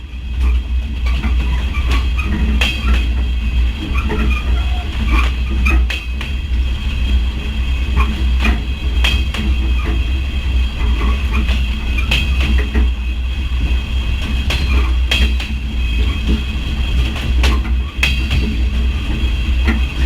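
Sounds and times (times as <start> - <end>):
train rumbling: 0.0 - 20.0
sharp clanks and knocks: 1.2 - 3.2, 8.0 - 10.0, 10.8 - 13.0, 14.3 - 18.9.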